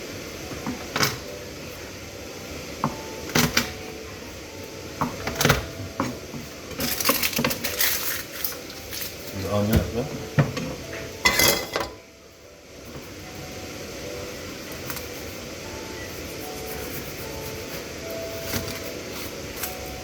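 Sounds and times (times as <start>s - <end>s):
utensils and dishes clattering: 5.2s - 12.0s.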